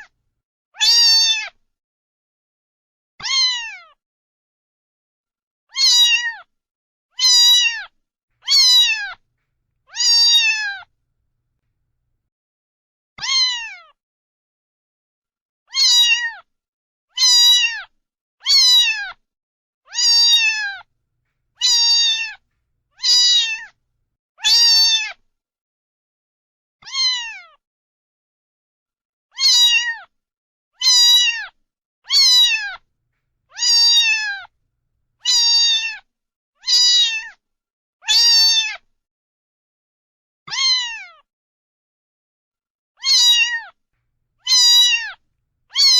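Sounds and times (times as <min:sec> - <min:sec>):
cat meowing: 0:03.2 - 0:03.8, 0:05.7 - 0:06.3, 0:07.2 - 0:09.2, 0:09.9 - 0:10.9, 0:13.2 - 0:13.9, 0:15.7 - 0:16.4, 0:17.2 - 0:17.8, 0:18.4 - 0:19.1, 0:19.9 - 0:20.9, 0:21.6 - 0:23.8, 0:26.8 - 0:27.5, 0:29.4 - 0:30.0, 0:30.8 - 0:31.5, 0:32.1 - 0:32.8, 0:33.5 - 0:34.5, 0:35.2 - 0:37.3, 0:40.5 - 0:41.1, 0:43.0 - 0:43.8, 0:44.4 - 0:45.9.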